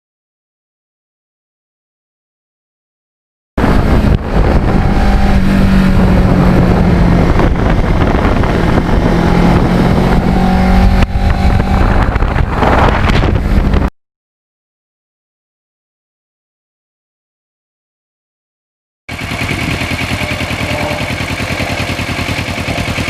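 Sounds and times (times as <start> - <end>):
motorcycle engine running: 3.6 - 13.9, 19.1 - 23.0
wind noise on microphone: 3.6 - 13.9.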